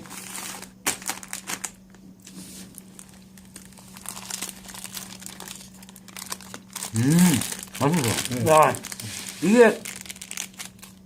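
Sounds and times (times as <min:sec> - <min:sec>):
plastic wrapper crinkling: 0:00.0 - 0:02.0, 0:02.6 - 0:11.0
low steady hum: 0:00.0 - 0:11.0.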